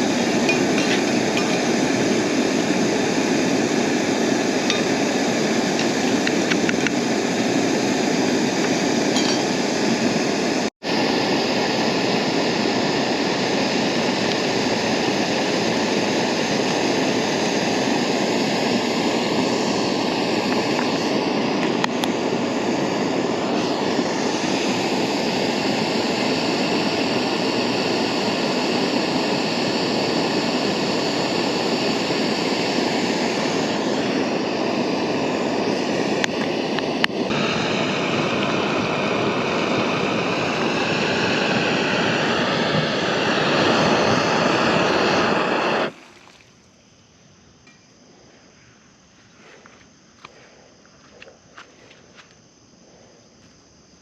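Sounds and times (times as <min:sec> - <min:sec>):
camp stove burner rushing: 0:00.0 - 0:46.2
light metallic clinks: 0:47.6 - 0:48.0.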